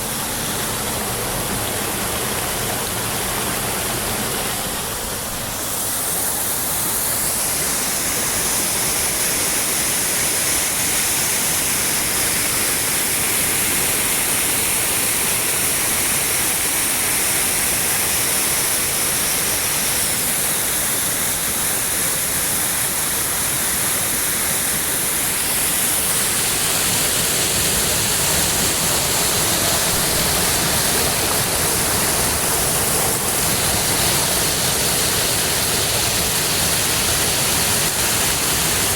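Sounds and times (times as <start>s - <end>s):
water rushing over a dam: 0.0s - 38.9s.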